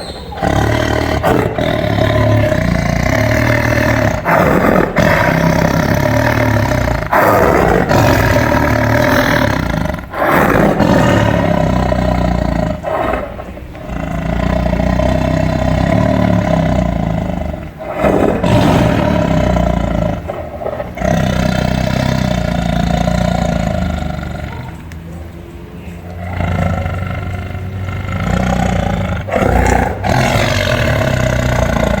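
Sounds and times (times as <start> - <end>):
lion roaring: 0.2 - 25.1, 26.0 - 32.0.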